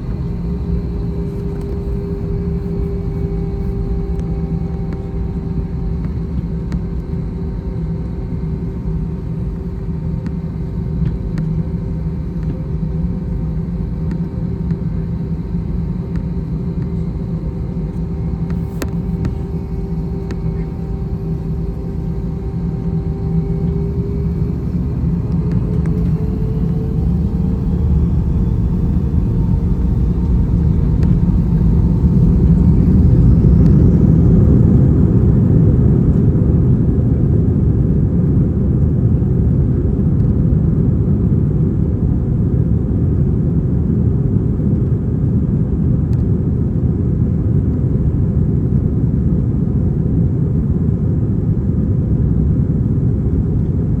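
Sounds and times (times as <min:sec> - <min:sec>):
airliner low rumble: 0:00.0 - 0:54.0
jet engines spooling up: 0:15.7 - 0:36.6.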